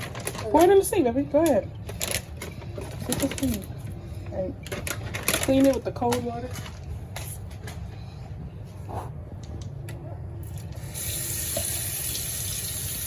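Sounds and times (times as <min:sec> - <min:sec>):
tap water running into sink: 0:10.8 - 0:13.0.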